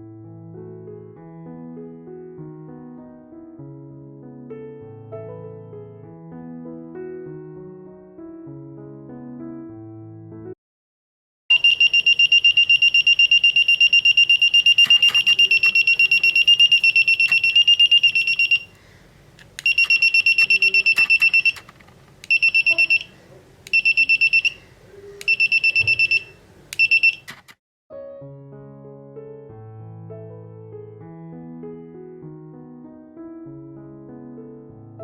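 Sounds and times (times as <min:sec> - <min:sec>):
door alarm buzzer beeping: 0:11.5 - 0:18.8, 0:19.6 - 0:23.1, 0:23.7 - 0:27.4
sharp clicks: 0:14.6 - 0:18.7, 0:19.4 - 0:22.7, 0:25.2 - 0:27.6.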